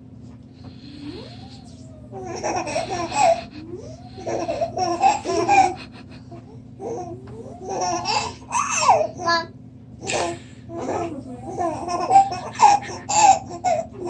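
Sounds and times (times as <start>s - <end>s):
little girl giggling: 1.0s - 8.5s, 10.2s - 14.0s.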